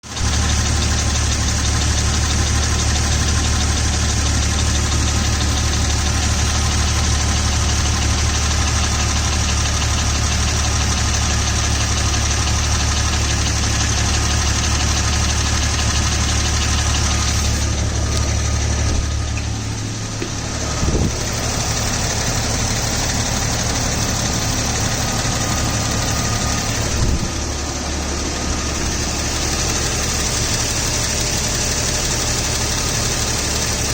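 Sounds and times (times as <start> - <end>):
car engine idling: 0.0 - 33.9
engine ticking: 0.0 - 33.9
short thumps: 18.2 - 21.3.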